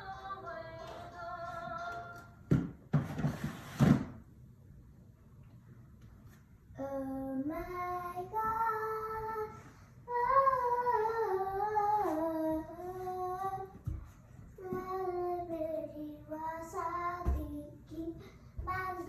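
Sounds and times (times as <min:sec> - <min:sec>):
child singing: 0:00.0 - 0:02.4, 0:06.8 - 0:14.0, 0:14.6 - 0:19.0.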